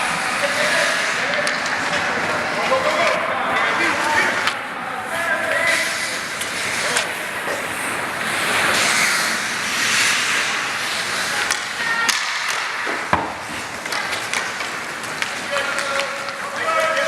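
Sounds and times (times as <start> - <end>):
skate blades scraping ice: 0.5 - 3.3, 5.7 - 16.5
sticks and puck clacking: 1.2 - 3.3, 11.3 - 16.9
loud knock: 13.1 - 13.6.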